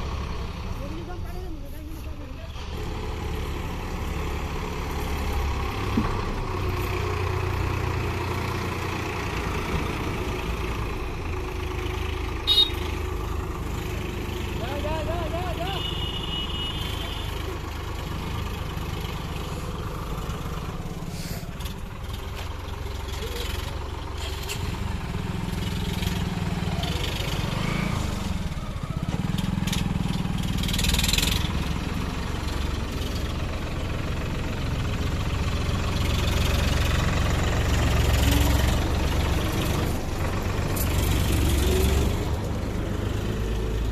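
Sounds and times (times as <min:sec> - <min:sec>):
combine harvester engine humming: 0:00.0 - 0:43.9.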